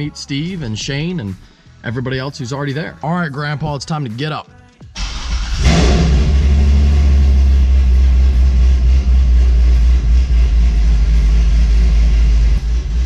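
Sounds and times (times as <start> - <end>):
car engine starting and idling: 5.0 - 13.0.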